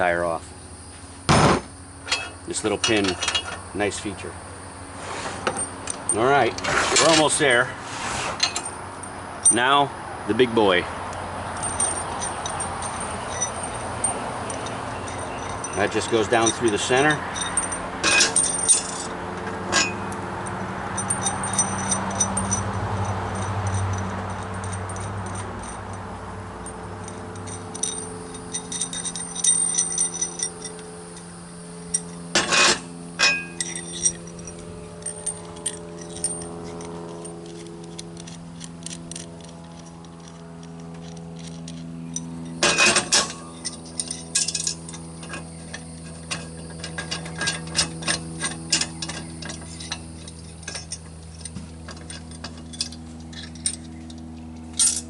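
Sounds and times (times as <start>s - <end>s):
steady low hum: 0.0s - 55.0s
loud metal knocks: 1.3s - 2.3s
steel parts clinking and clanking: 2.0s - 4.3s, 5.3s - 7.7s, 8.3s - 55.0s.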